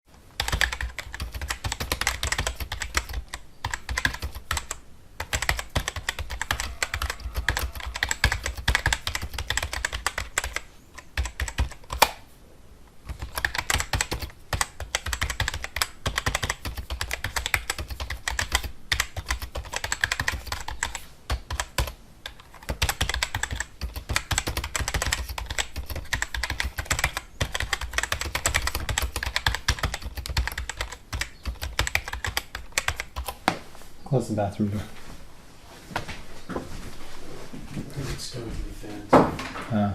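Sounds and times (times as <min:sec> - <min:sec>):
fast typing on keyboard: 0:00.4 - 0:12.1, 0:13.0 - 0:33.4.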